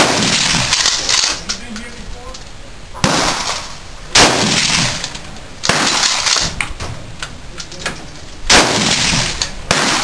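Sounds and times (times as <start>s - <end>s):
echoing gunshots: 0.0s - 1.4s, 3.0s - 6.6s, 8.5s - 10.0s.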